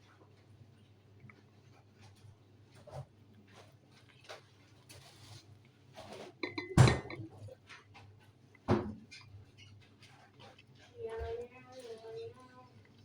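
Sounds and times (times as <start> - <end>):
dishes clinking and knocking: 6.1 - 7.5.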